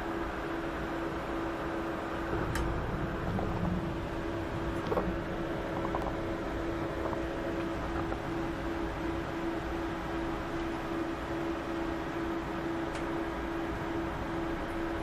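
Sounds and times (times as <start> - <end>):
steady hum: 0.0 - 15.0
heavy rain pouring: 2.0 - 9.2.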